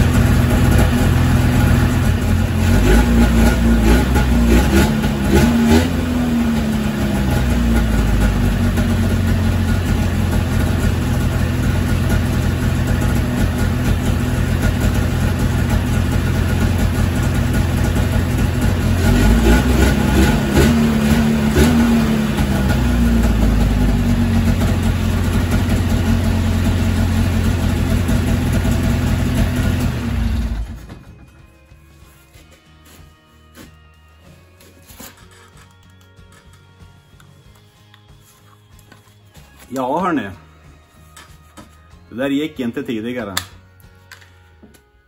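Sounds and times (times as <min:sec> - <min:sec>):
two-stroke engine idling and revving: 0:00.0 - 0:31.2.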